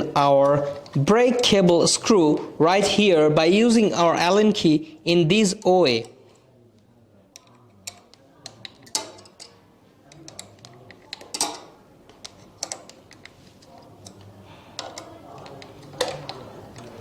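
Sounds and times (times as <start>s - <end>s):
allen key clicking on metal: 7.4s - 9.5s, 10.1s - 13.3s.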